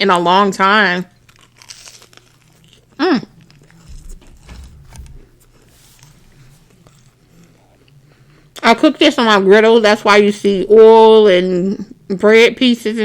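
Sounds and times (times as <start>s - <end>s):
person chewing food: 1.2s - 8.2s.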